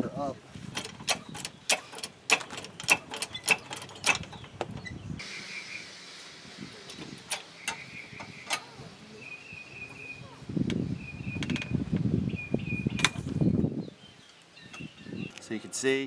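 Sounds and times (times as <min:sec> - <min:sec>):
car jack clicking strokes: 0:00.7 - 0:05.0, 0:06.9 - 0:08.8, 0:12.9 - 0:13.3.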